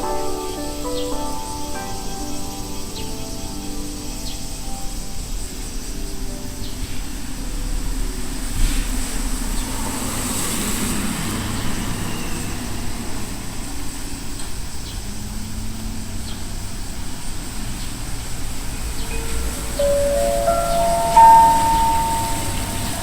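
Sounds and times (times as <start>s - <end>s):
traffic rumble: 1.4s - 23.0s
thin steady high tone: 18.4s - 23.0s.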